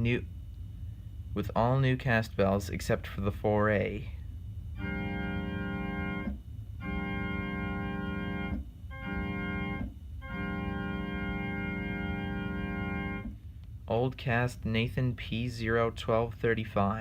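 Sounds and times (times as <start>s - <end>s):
electronic keyboard organ chord: 4.8s - 13.3s.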